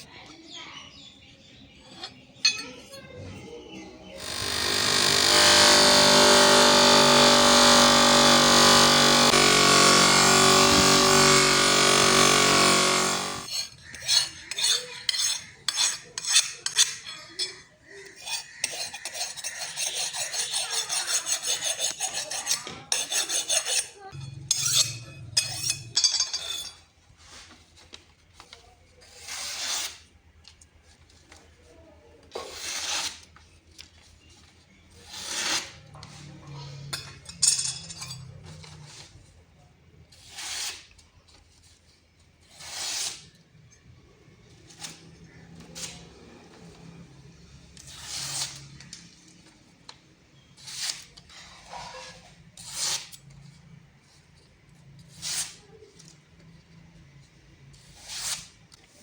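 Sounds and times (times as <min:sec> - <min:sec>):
scraping strokes on knife blade: 0:13.4 - 0:27.6, 0:50.6 - 0:53.3, 0:55.0 - 0:55.8, 0:57.8 - 0:59.0.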